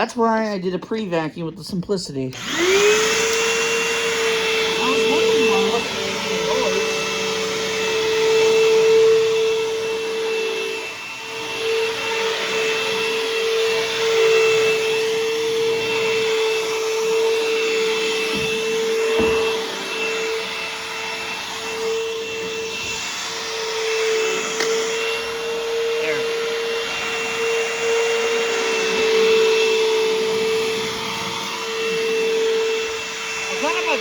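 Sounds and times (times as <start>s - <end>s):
vacuum cleaner running: 0.0s - 34.0s.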